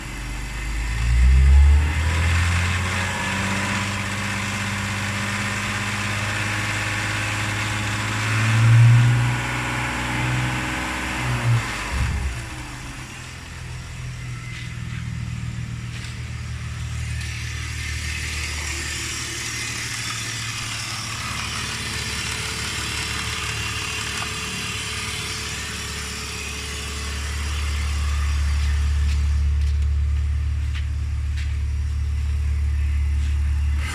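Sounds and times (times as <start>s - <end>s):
car engine revving: 0.5s - 33.9s
engine chattering rattle: 14.4s - 33.0s.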